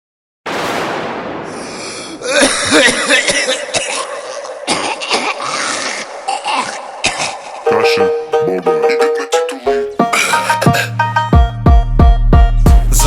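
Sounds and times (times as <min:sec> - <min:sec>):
man coughing in heavy fits: 0:02.2 - 0:08.0, 0:08.9 - 0:11.0.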